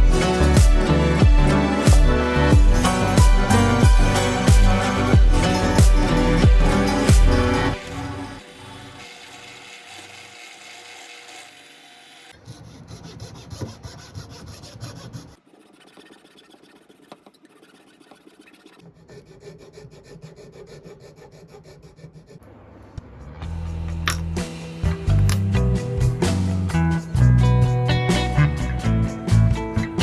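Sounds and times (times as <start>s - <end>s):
file rasping on workpiece: 4.1s - 22.5s.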